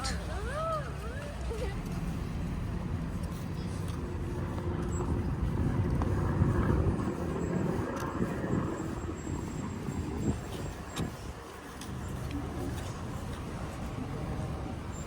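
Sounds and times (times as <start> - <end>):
motor vehicle rumble: 0.0 - 15.0.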